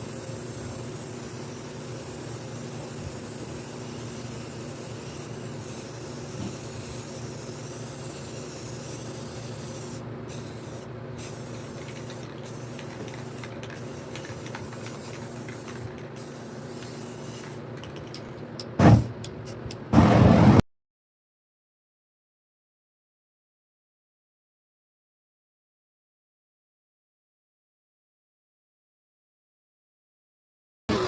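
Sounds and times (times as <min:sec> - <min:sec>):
spray paint can hissing: 0:00.0 - 0:20.6
sudden loud sound: 0:20.0 - 0:20.6.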